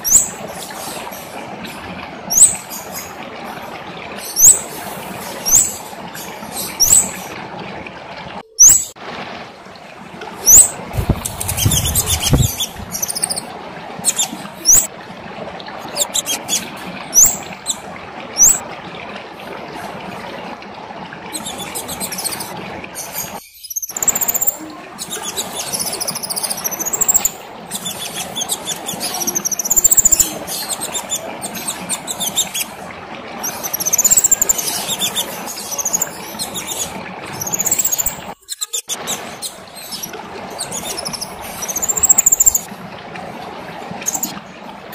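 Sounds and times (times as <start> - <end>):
songbird chirping and twittering: 10.5 - 13.5, 23.0 - 32.6.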